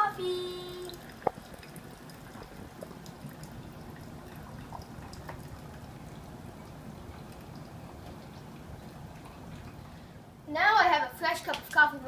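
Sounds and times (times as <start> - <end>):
coffee trickling into a cup: 0.7 - 10.0.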